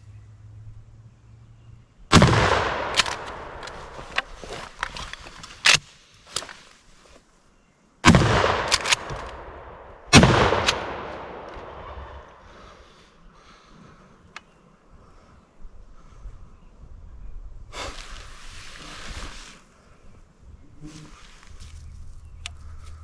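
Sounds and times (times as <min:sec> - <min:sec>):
shotgun blasts echoing: 0:02.1 - 0:04.0, 0:08.0 - 0:12.4.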